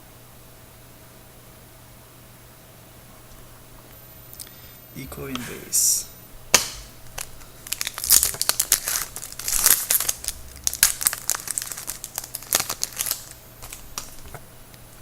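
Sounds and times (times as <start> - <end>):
card pack wrapper tearing and crinkling: 6.6 - 14.4.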